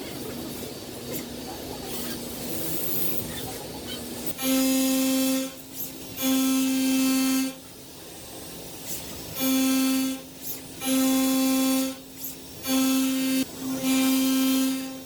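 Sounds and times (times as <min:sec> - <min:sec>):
loud buzzing tone: 0:04.3 - 0:07.6, 0:09.3 - 0:15.0.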